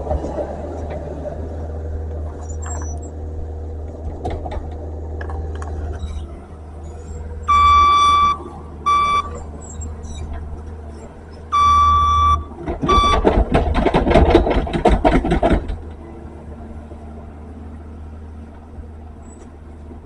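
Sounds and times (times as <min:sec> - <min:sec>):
skid steer engine running: 0:00.0 - 0:20.0
reversing alarm beeps: 0:07.4 - 0:09.8, 0:11.5 - 0:13.3
machine knocks and clanks: 0:12.5 - 0:16.0.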